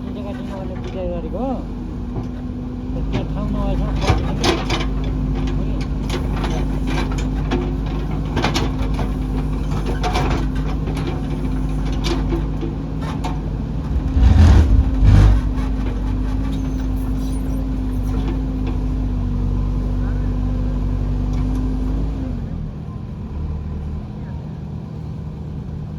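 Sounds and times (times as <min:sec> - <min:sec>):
engine running: 0:10.5 - 0:17.2
heavy low thumps: 0:13.7 - 0:15.8.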